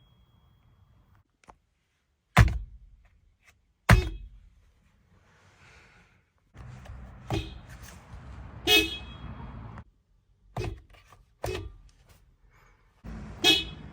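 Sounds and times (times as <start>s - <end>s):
car horn honks: 7.0s - 9.8s, 13.1s - 13.9s.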